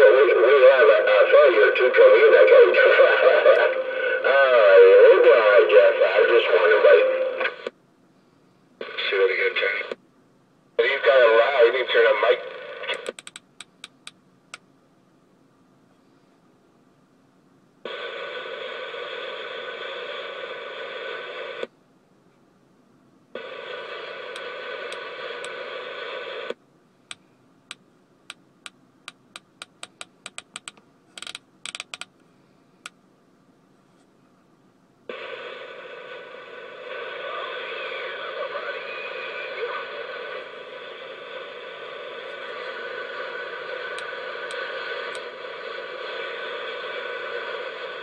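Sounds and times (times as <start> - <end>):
radio static hiss: 0.0 - 10.0, 10.8 - 14.2, 17.8 - 21.7, 23.4 - 27.4, 35.1 - 48.0
radio clicks: 12.9 - 14.7, 23.4 - 32.1, 43.9 - 45.4.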